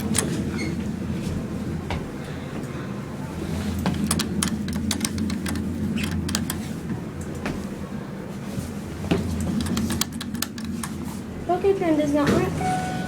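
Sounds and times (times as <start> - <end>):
elevator low hum: 0.0 - 13.0
sharp clicks: 3.9 - 6.6, 9.4 - 11.0.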